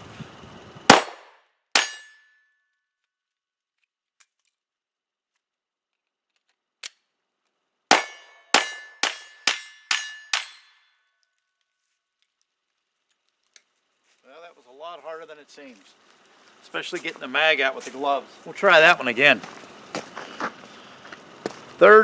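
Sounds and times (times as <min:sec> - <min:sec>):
pistol shots: 0:00.9 - 0:02.0, 0:07.9 - 0:10.1
metallic ring: 0:01.8 - 0:02.9, 0:07.9 - 0:11.3.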